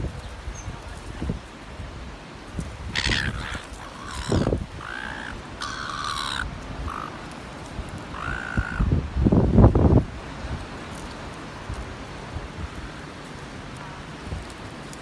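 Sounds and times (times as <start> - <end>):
wind gust on microphone: 0.0 - 14.9
gulls calling: 2.9 - 8.9.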